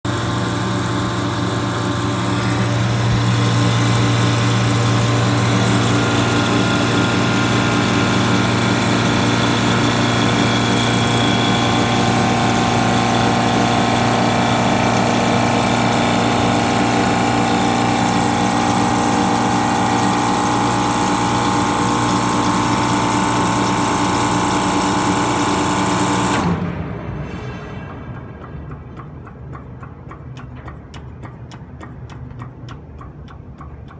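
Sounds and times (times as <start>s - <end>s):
refrigeration compressor humming: 0.0s - 26.8s
high whine: 0.0s - 29.4s.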